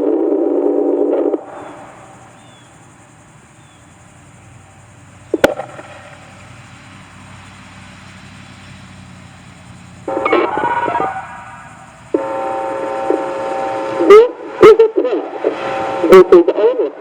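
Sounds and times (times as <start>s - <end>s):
faint low hum: 0.0s - 17.0s
electronic siren tone: 9.8s - 17.0s.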